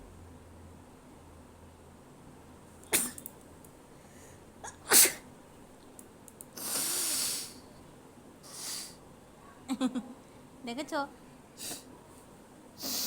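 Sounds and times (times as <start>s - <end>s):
woman sneezing: 4.7s - 5.2s
hissing breath: 6.6s - 7.7s, 8.4s - 9.0s, 11.6s - 11.9s, 12.8s - 13.0s.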